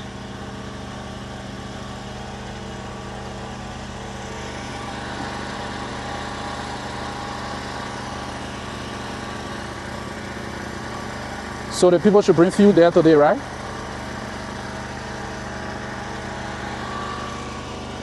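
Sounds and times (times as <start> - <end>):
engine running steadily: 0.0 - 18.0.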